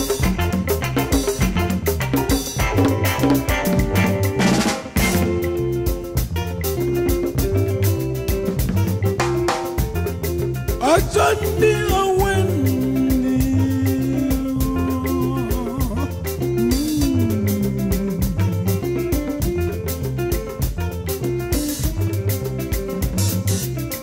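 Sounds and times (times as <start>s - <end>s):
upbeat music with drums and guitar: 0.0s - 24.0s
person singing long notes: 10.8s - 18.7s.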